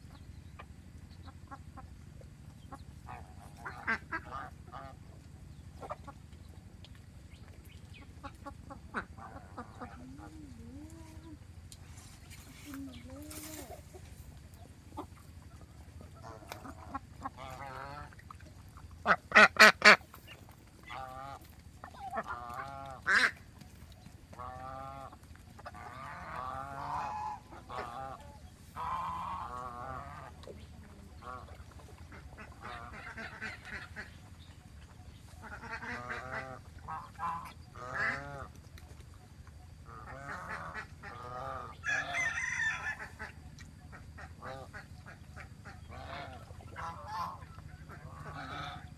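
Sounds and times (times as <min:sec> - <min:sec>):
geese honking: 0:02.7 - 0:05.1, 0:19.0 - 0:23.6, 0:24.3 - 0:34.4, 0:35.2 - 0:38.5, 0:39.8 - 0:48.9.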